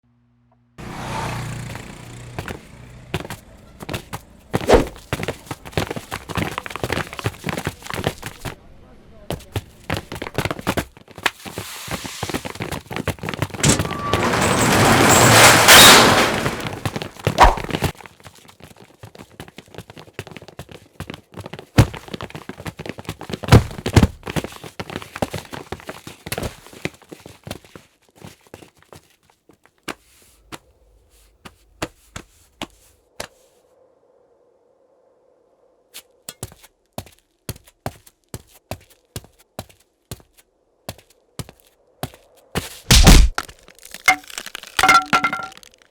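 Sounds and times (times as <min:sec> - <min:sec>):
heavy impacts: 0:13.5 - 0:17.9, 0:42.9 - 0:45.6
sharp hits: 0:42.9 - 0:45.6.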